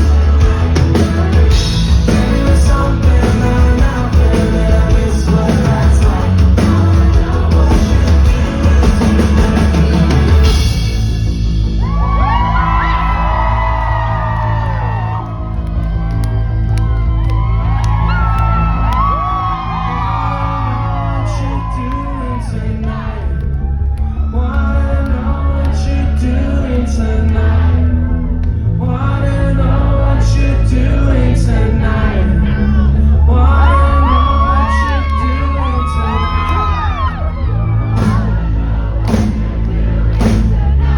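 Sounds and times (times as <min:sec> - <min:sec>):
person singing: 0:00.0 - 0:11.0, 0:28.8 - 0:39.4
heavy bass: 0:00.0 - 0:40.9
live pop-rock band: 0:00.0 - 0:40.9.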